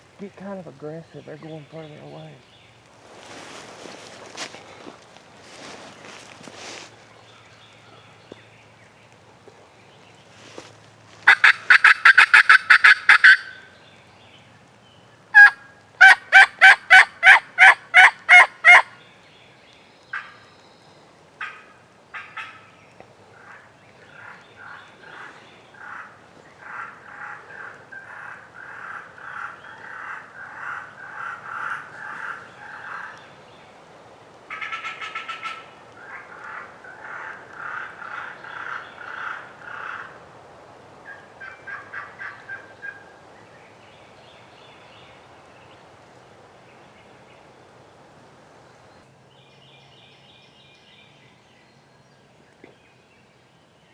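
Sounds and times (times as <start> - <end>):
turkey call yelps: 11.3 - 13.6, 15.4 - 18.9, 34.5 - 40.1, 41.1 - 43.1.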